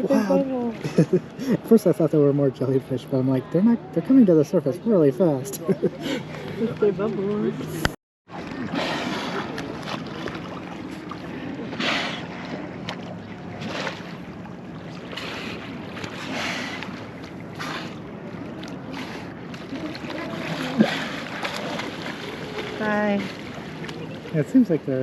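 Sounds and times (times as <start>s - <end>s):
water washing: 7.8s - 25.0s.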